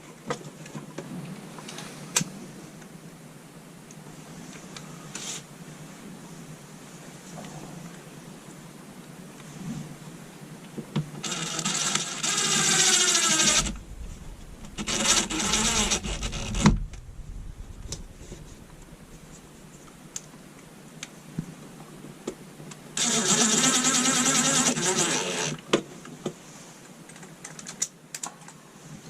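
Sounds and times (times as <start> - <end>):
cordless drill motor running: 11.2 - 16.7, 23.0 - 25.6.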